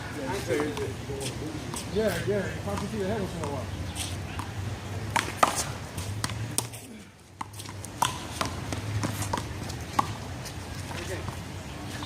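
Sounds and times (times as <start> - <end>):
handball smacks and bounces: 7.4 - 10.2.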